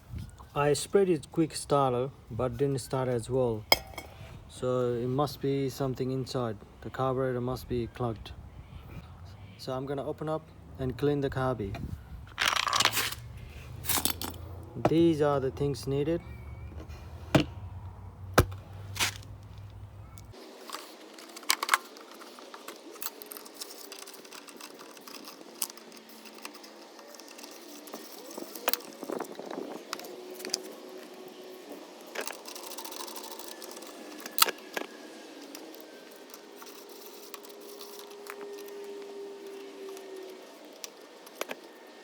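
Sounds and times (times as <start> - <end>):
hand tools clinking: 3.7 - 4.2, 20.5 - 42.0.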